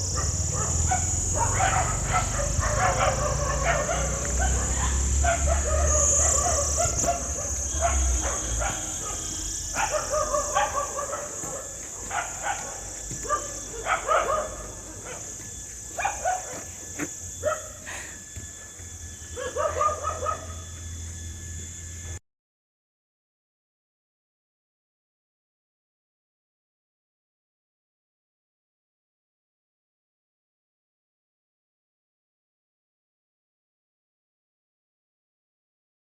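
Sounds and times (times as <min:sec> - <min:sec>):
dog barking and yipping: 0:00.0 - 0:17.8, 0:19.3 - 0:20.7.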